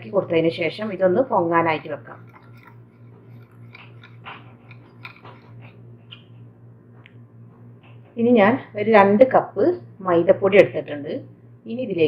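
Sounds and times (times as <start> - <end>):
spoon tapping and scraping bowl: 2.2 - 5.8.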